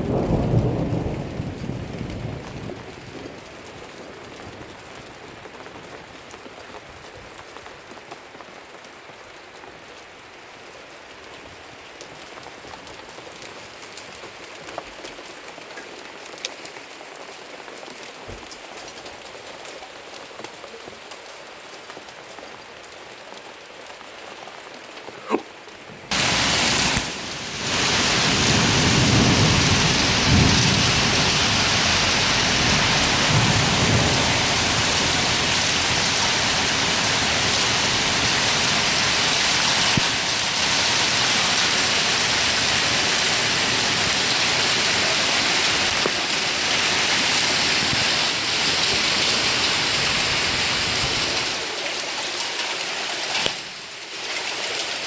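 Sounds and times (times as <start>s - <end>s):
heavy downpour: 0.0s - 55.0s
rain falling: 0.0s - 55.0s
low rumbling: 26.1s - 36.7s.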